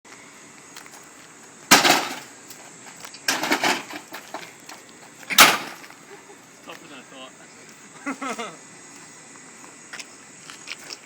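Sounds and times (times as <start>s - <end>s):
metal pipe hitting air conditioner: 1.7s - 2.6s, 3.3s - 4.5s, 5.3s - 5.9s.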